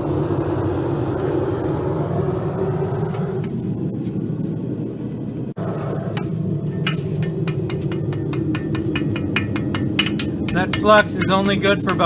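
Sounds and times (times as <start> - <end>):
low rumble: 0.0 - 12.0
hammer striking metal on anvil: 6.7 - 12.0.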